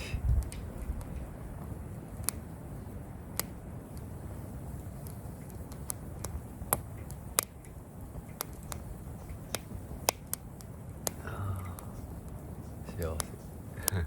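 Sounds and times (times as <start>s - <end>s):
campfire crackling and popping: 0.0s - 14.0s
low rumble: 11.1s - 14.0s.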